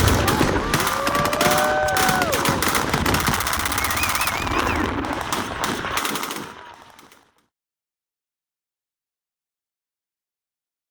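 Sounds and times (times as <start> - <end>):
machine guns firing: 0.0 - 7.4.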